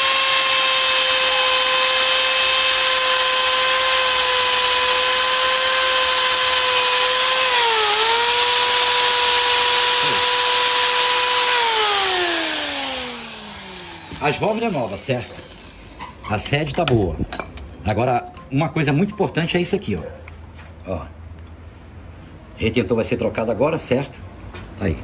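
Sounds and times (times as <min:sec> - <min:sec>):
electric drill whining: 0:00.0 - 0:16.3.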